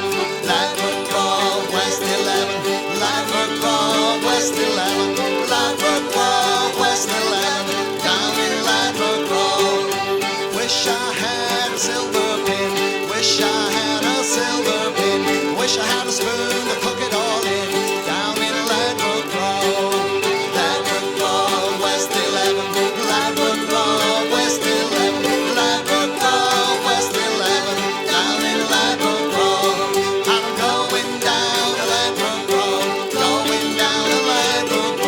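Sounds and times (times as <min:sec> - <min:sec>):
fiddle melody: 0:00.0 - 0:35.0
folk band playing: 0:00.0 - 0:35.0.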